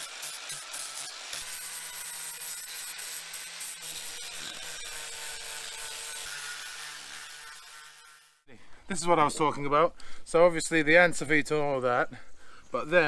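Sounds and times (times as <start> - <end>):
rotary tool grinding wood: 0.0 - 8.5.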